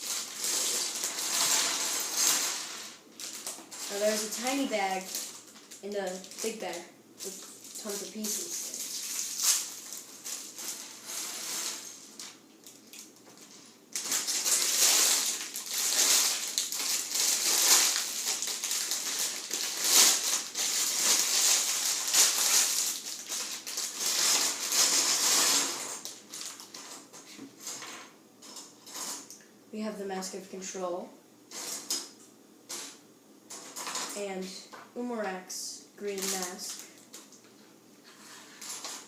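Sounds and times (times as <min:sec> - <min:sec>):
plastic bags crinkling: 0:00.0 - 0:27.8, 0:36.0 - 0:37.5, 0:38.2 - 0:39.0
plastic pieces rattling: 0:00.0 - 0:29.4, 0:32.7 - 0:34.2, 0:38.5 - 0:39.0.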